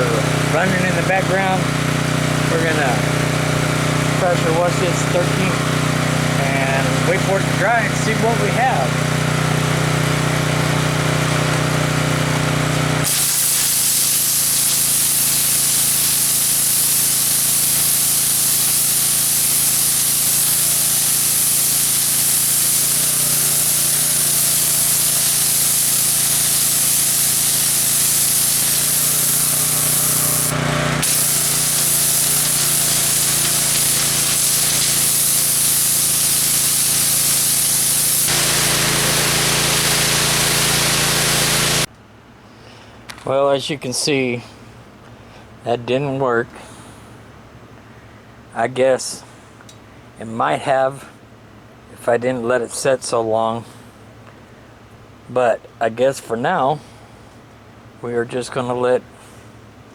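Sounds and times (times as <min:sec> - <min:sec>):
pressure washer jet hissing: 0:00.0 - 0:41.9
small engine running: 0:00.0 - 0:41.9.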